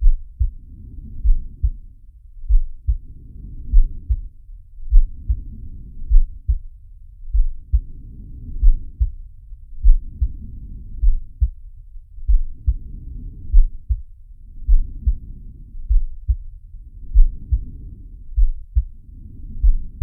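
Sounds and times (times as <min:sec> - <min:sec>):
double thump heartbeat: 0:00.0 - 0:00.6, 0:01.2 - 0:03.0, 0:03.7 - 0:04.3, 0:04.9 - 0:05.5, 0:06.1 - 0:06.7, 0:07.3 - 0:07.9, 0:08.6 - 0:09.2, 0:09.8 - 0:10.4, 0:11.0 - 0:11.6, 0:12.2 - 0:12.9, 0:13.5 - 0:15.3, 0:15.9 - 0:16.5, 0:17.1 - 0:17.7, 0:18.3 - 0:19.0, 0:19.6 - 0:20.0
soft breathing: 0:07.5 - 0:20.0.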